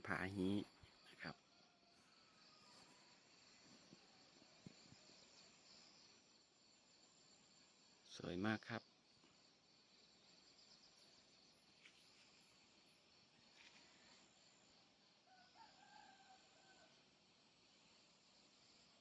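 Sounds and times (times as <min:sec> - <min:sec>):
high insect drone: 0:00.0 - 0:19.0
distant rooster crowing: 0:01.3 - 0:03.5, 0:15.2 - 0:17.2.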